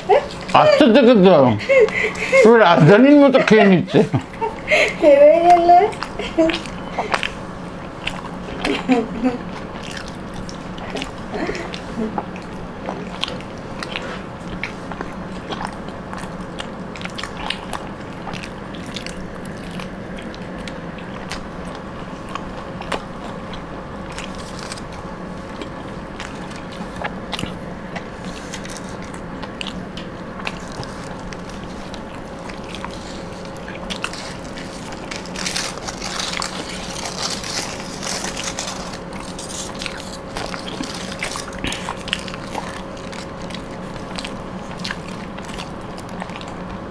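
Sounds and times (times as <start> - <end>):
people chewing food: 0.0 - 46.9.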